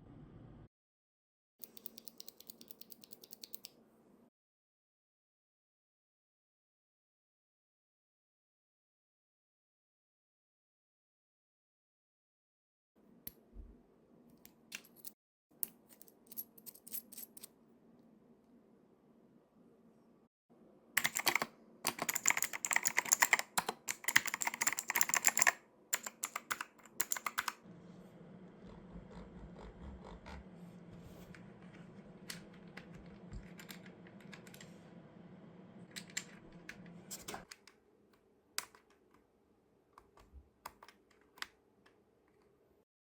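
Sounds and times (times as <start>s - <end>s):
faint low hum: 0.0s - 0.7s, 27.6s - 40.4s
mechanical keyboard typing: 1.6s - 3.7s, 21.0s - 27.6s, 31.6s - 34.7s.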